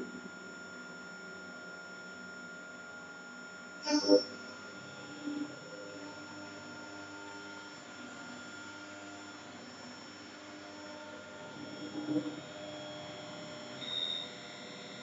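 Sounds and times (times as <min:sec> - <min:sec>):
electrical hum: 0:00.0 - 0:15.0
short high-pitched whine: 0:03.8 - 0:06.8, 0:11.4 - 0:15.0.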